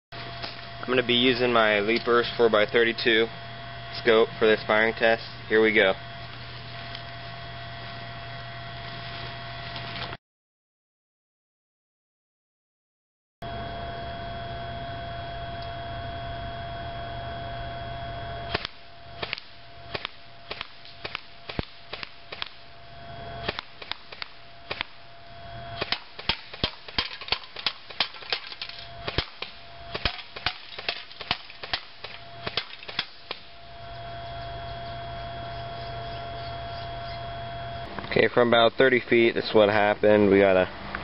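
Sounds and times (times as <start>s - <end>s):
steady hum with faint whine: 0.2s - 10.2s, 13.4s - 41.0s
airsoft gun shots: 18.5s - 22.6s, 23.4s - 25.0s, 25.8s - 33.5s.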